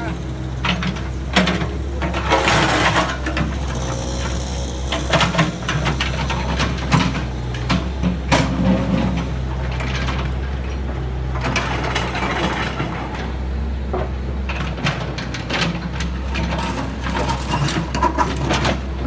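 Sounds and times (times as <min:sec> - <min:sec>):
heavy vehicle engine running: 0:00.0 - 0:19.0.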